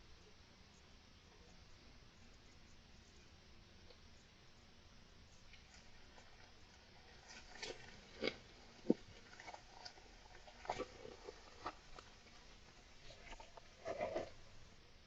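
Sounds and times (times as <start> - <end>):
hamster gnawing and chewing: 0.7 - 14.8.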